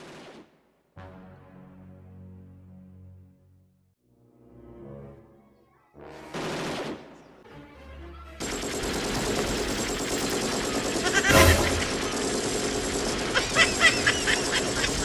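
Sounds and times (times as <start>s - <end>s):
rapid machine-gun fire: 6.3s - 7.1s, 8.4s - 15.0s
loud blast: 11.3s - 12.1s.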